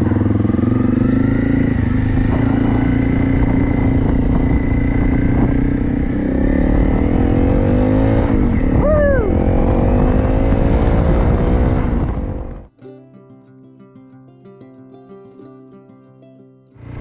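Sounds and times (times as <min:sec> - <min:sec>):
motorcycle engine accelerating: 0:00.0 - 0:12.7, 0:16.8 - 0:17.0.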